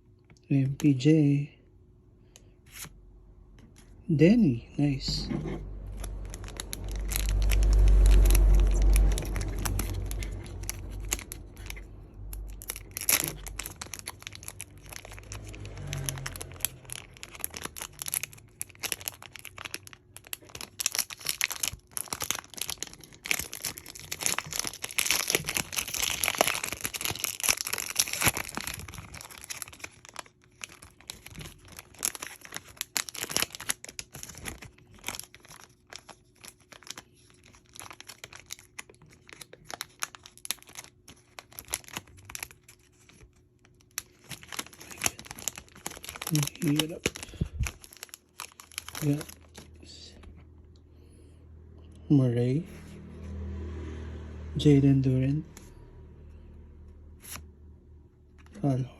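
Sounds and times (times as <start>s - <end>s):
low rumble of handling: 2.9s - 32.2s, 42.0s - 53.4s
foil wrappers crinkling and tearing: 5.8s - 50.2s.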